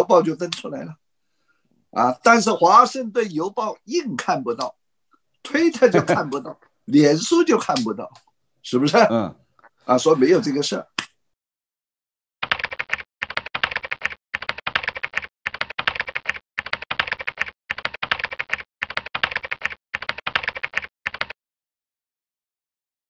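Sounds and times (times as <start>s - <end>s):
keyboard typing: 12.4s - 21.4s.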